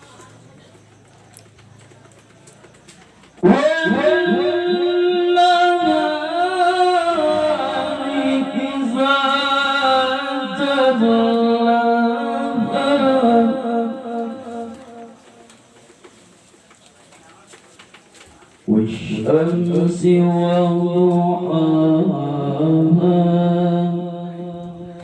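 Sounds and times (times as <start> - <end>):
man chanting melodically: 3.4 - 15.4, 18.7 - 25.0.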